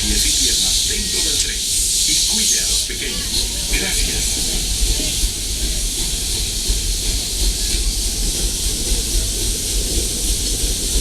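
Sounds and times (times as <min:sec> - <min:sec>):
steam locomotive hissing: 0:00.0 - 0:11.0.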